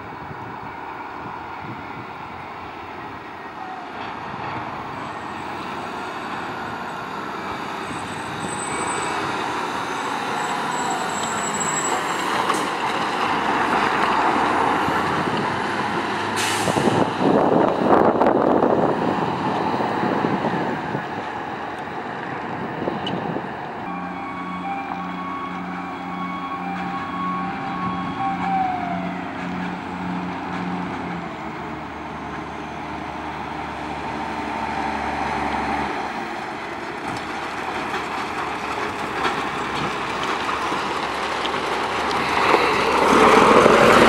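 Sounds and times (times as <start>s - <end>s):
air brakes hissing: 16.3s - 17.1s.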